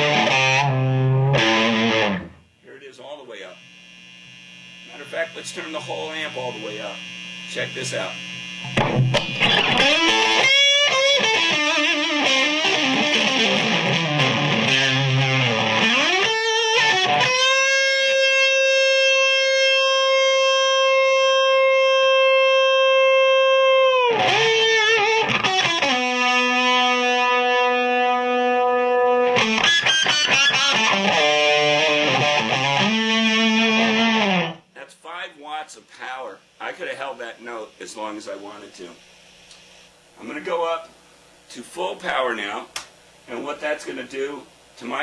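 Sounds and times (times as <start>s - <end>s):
distorted electric guitar: 0.0s - 2.5s, 3.6s - 34.7s.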